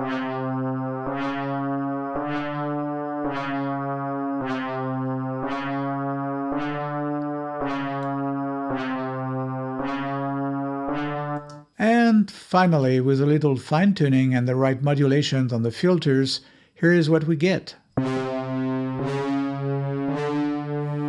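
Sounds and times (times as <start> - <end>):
brassy synthesizer notes: 0.0 - 11.9, 18.0 - 21.0.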